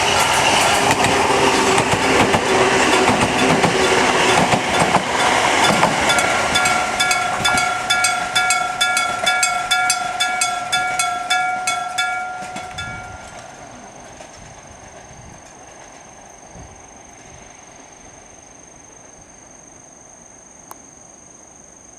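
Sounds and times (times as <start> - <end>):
train running past: 0.0 - 20.4
level crossing bell ringing: 2.5 - 13.7.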